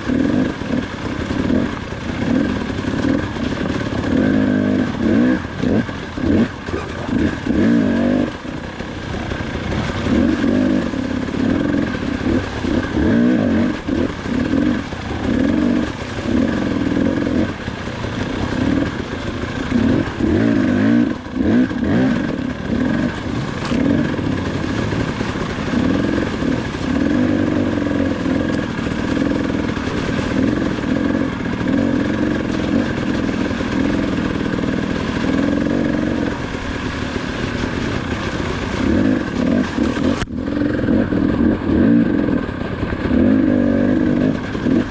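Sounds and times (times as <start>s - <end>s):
motorcycle engine revving: 0.0s - 44.9s.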